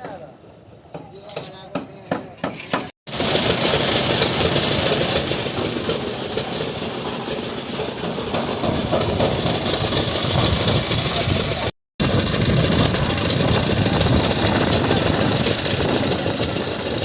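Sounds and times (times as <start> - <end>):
heavy machinery rumbling: 3.1 - 17.0.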